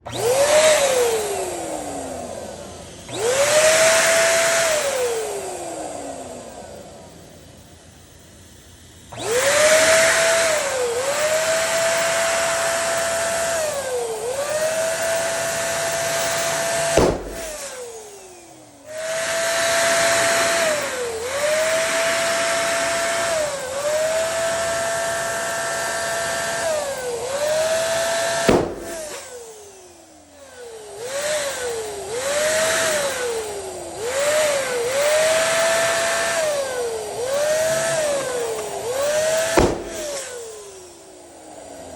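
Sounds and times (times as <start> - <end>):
electric balloon pump whine: 0.0 - 41.9
balloon popping: 16.9 - 17.6, 28.4 - 29.1, 39.5 - 40.2.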